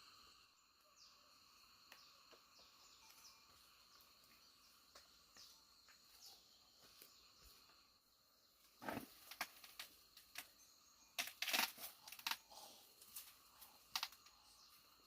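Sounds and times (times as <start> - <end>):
insects trilling: 0.0 - 15.0.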